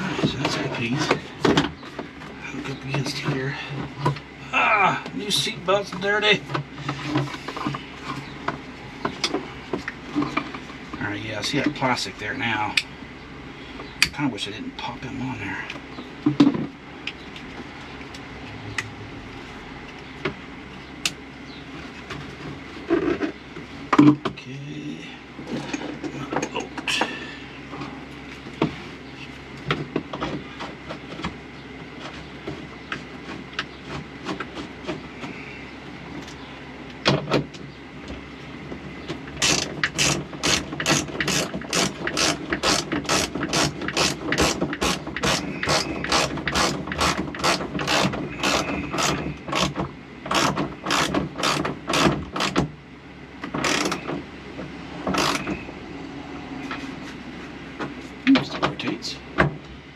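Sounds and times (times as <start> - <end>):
hand ratchet clicking: 39.4 - 49.7, 50.3 - 52.6, 53.6 - 54.0, 55.1 - 55.6.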